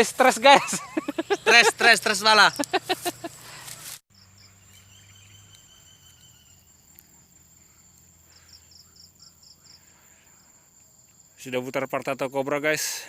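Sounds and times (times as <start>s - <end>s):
insect trill: 0.2s - 3.5s, 4.1s - 12.8s
quick insect chirps: 0.6s - 11.6s.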